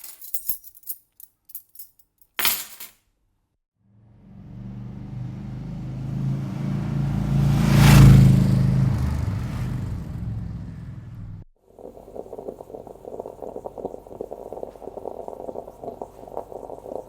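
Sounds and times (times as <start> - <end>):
vehicle driving past: 3.8 - 11.5.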